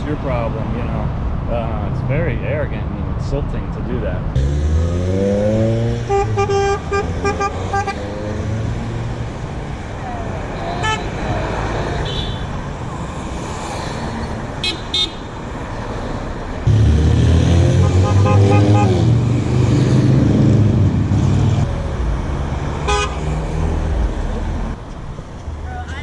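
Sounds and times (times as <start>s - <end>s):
street traffic: 0.0s - 26.0s
vehicle engine passing: 0.7s - 14.6s, 15.4s - 24.9s
car horn toots: 6.0s - 8.0s, 12.0s - 12.5s, 17.7s - 19.1s, 22.8s - 23.3s.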